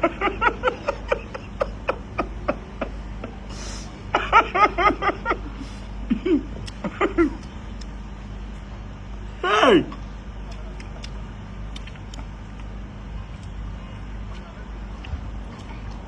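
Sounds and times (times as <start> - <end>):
person laughing in bursts: 0.0 - 7.4.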